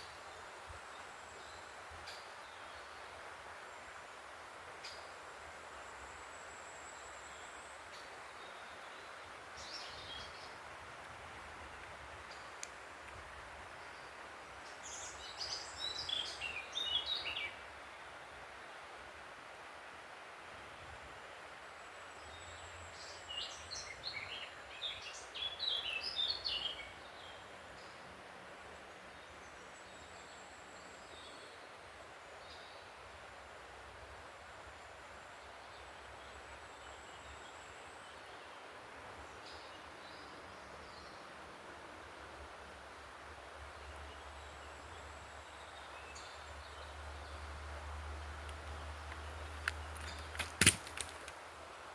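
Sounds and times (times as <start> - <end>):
songbird singing: 0.0 - 4.0, 4.7 - 18.9, 21.7 - 33.7, 34.7 - 41.6, 43.7 - 51.9
background hiss: 0.0 - 51.9
birdsong: 13.7 - 18.1, 22.0 - 28.1.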